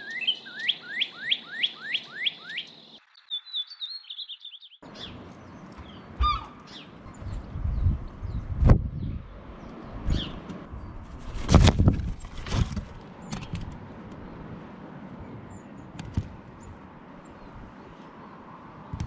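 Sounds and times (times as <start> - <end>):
faint high bird chirps: 0.0 - 9.2.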